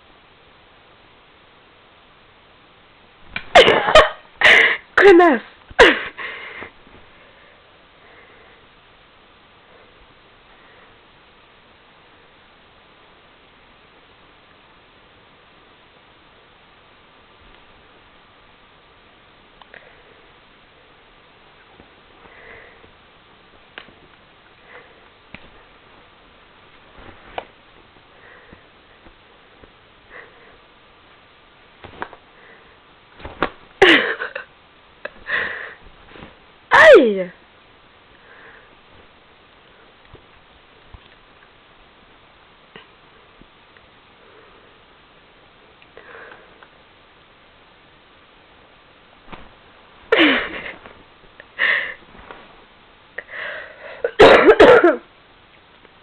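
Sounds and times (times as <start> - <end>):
soft breathy puffs: 22.2 - 23.0.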